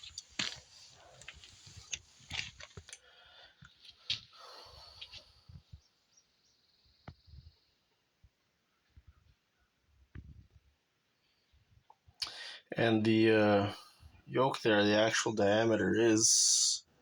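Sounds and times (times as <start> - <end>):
handling clicks and rustling: 0.0 - 4.4.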